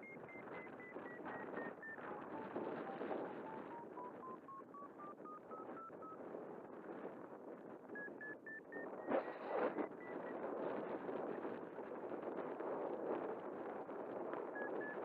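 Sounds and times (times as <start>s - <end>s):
transmitter short beeps: 0.0s - 6.2s, 8.0s - 10.4s, 14.6s - 15.0s
wind noise on microphone: 0.0s - 15.0s.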